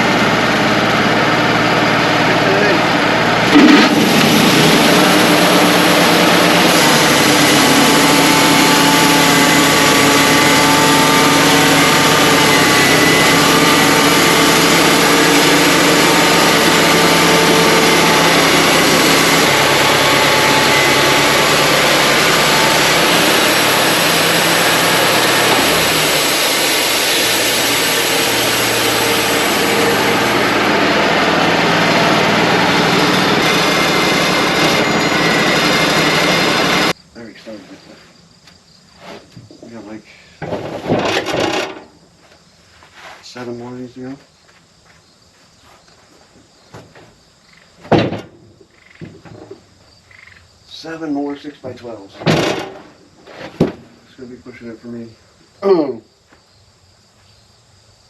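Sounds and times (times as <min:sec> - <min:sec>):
band sawmill running: 0:00.0 - 0:37.0, 0:39.4 - 0:42.0, 0:51.6 - 0:54.0.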